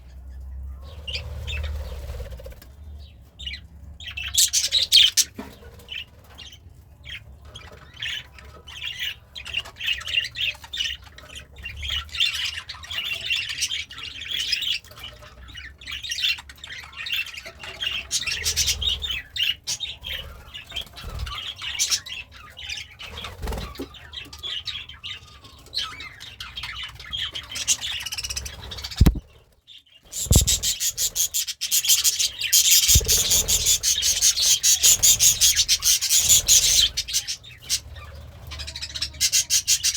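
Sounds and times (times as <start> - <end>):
budgerigar chirping: 29.0 - 29.2, 30.2 - 37.7
dry scratching: 30.2 - 30.9.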